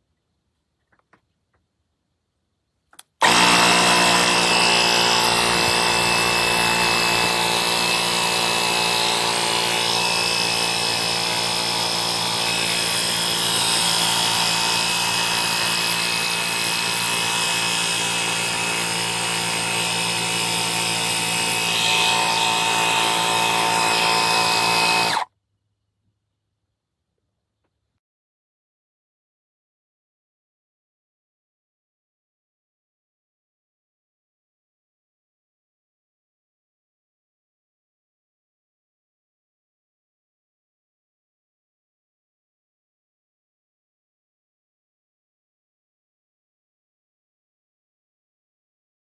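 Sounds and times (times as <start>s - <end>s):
compressor motor running: 3.0s - 25.2s.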